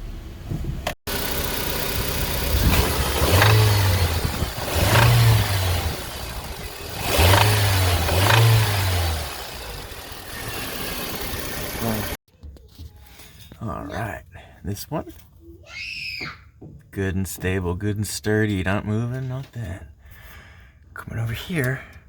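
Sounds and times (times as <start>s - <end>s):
car engine revving: 1.1s - 12.2s.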